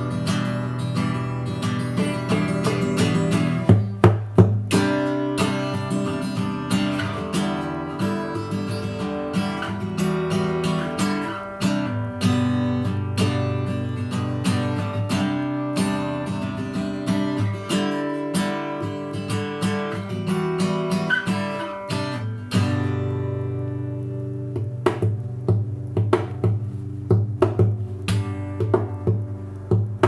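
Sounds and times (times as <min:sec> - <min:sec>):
acoustic guitar strummed and picked: 0:00.0 - 0:30.0.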